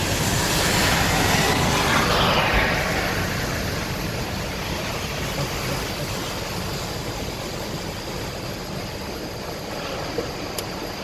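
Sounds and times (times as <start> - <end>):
heavy rain: 0.0 - 11.0.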